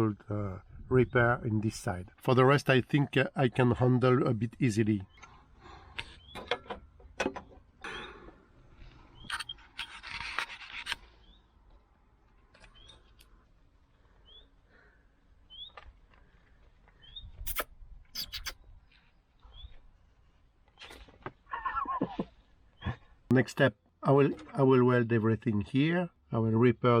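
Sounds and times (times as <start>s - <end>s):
bird chirping: 6.1s - 6.5s, 11.2s - 11.6s, 12.6s - 13.1s, 14.1s - 14.6s, 15.4s - 15.9s, 17.0s - 19.8s.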